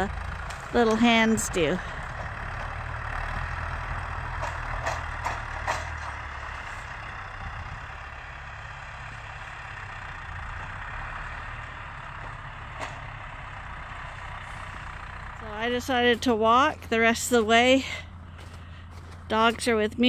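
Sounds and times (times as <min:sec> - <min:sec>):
tractor engine running: 0:00.0 - 0:20.0.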